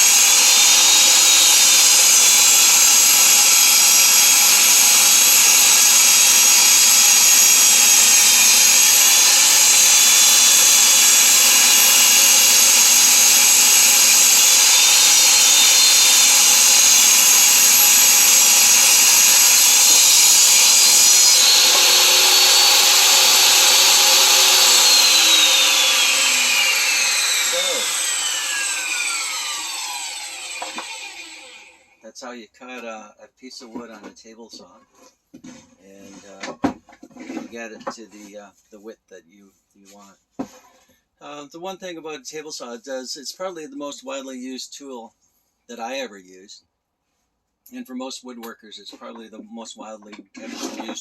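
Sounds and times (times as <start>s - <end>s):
saw blade winding down: 0.0s - 31.9s, 50.4s - 51.0s
table saw cutting wood: 0.0s - 31.9s, 50.3s - 51.0s.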